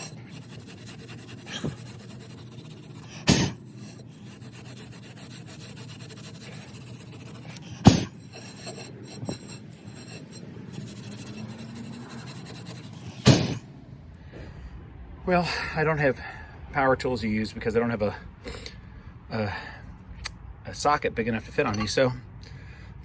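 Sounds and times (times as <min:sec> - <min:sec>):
rust scraping on metal: 0:00.0 - 0:13.6, 0:20.8 - 0:22.1
sharp knocks: 0:07.8 - 0:08.2, 0:13.2 - 0:13.6.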